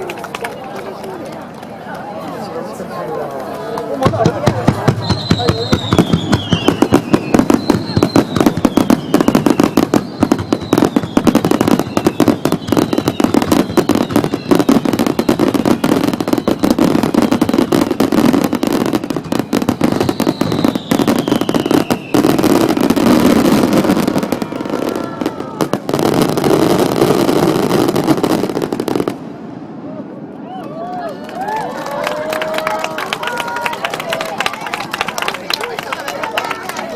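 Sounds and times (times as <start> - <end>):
fireworks bangs and crackle: 0.0 - 2.3, 2.9 - 31.6
falling firework whistles: 4.8 - 29.1.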